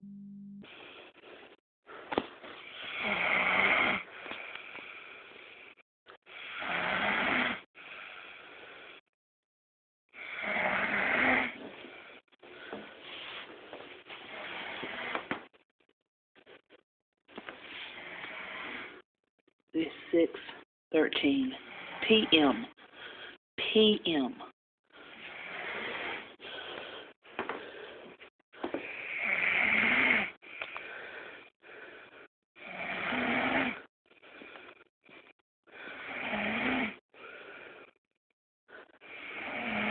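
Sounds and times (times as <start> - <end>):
rasping snores: 2.7 - 5.5, 6.3 - 9.0, 10.1 - 11.6, 14.3 - 15.3, 17.8 - 19.0, 25.1 - 26.4, 28.8 - 30.6, 32.6 - 33.9, 35.8 - 37.0, 38.9 - 39.9
quiet breaths: 4.0 - 6.7, 7.7 - 9.1, 21.5 - 23.4, 24.9 - 29.2, 30.4 - 32.3, 34.1 - 36.1, 37.0 - 38.0.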